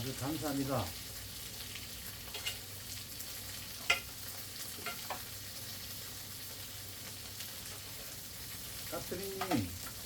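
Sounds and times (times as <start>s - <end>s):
tofu sizzling in oil: 0.0s - 10.0s
utensil clicking against pan: 9.4s - 10.0s.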